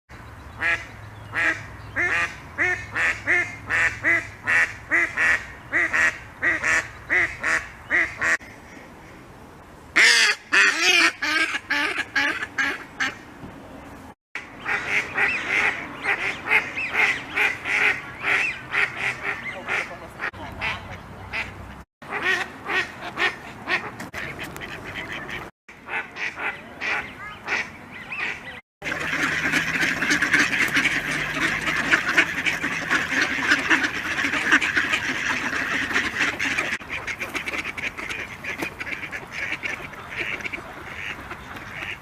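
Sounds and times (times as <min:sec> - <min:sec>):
duck quacking: 0:00.6 - 0:08.4, 0:10.0 - 0:13.2, 0:14.6 - 0:42.0.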